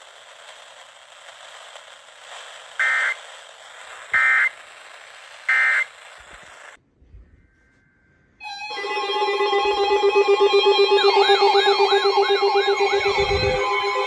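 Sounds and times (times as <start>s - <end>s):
radio static: 0.0s - 6.8s, 8.7s - 14.0s
two-tone digital data warble: 7.4s - 14.0s.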